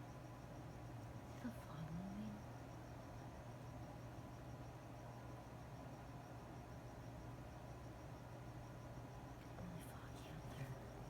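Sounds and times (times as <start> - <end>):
crickets chirping: 0.0 - 11.0.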